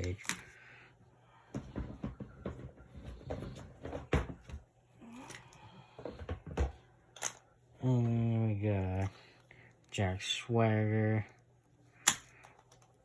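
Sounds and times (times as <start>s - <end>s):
plastic figures clicking and knocking: 0.0s - 0.6s, 12.0s - 13.0s.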